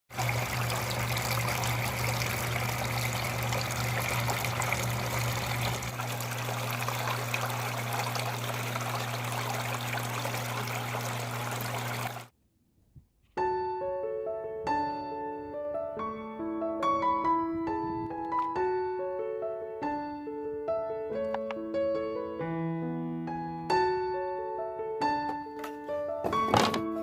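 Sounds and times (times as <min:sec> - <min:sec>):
water trickling and splashing: 0:00.1 - 0:12.3
steady low hum: 0:00.2 - 0:13.2.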